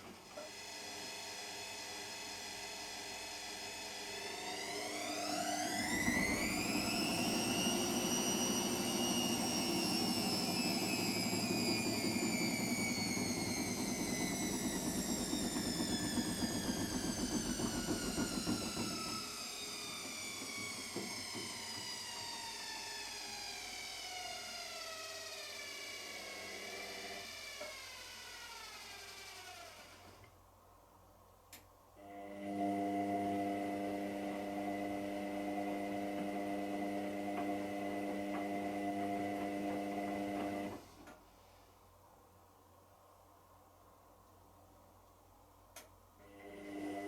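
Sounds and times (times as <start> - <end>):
washing machine drum whine: 4.0 - 28.1.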